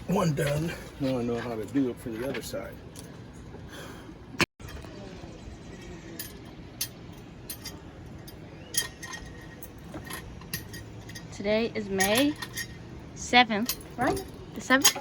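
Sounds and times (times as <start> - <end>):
light metallic clinks and taps: 6.2 - 12.8.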